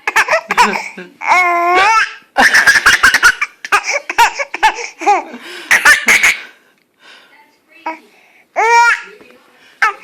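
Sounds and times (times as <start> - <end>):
baby laughing and squealing: 0.0 - 6.4.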